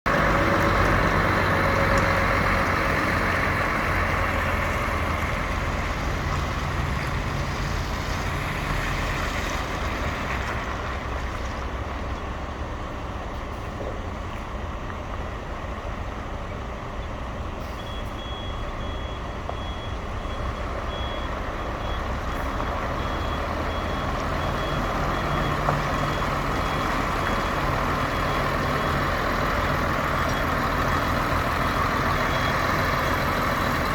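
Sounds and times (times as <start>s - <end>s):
diesel engine running: 0.1s - 33.9s.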